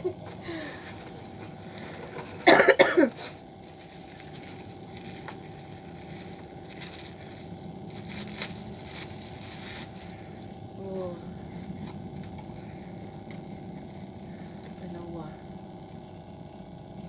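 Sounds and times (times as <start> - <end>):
person coughing: 2.4 - 3.4.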